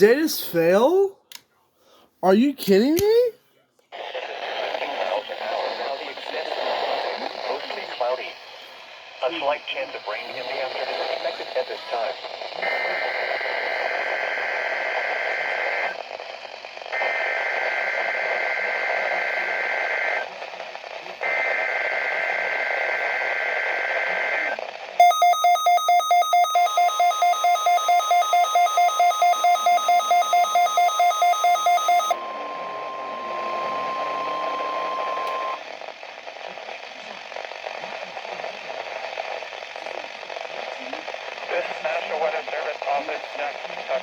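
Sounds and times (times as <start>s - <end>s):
radio hiss: 3.9s - 44.0s
rapid alarm beeps: 25.0s - 35.6s
steady warning alarm tone: 25.0s - 35.6s.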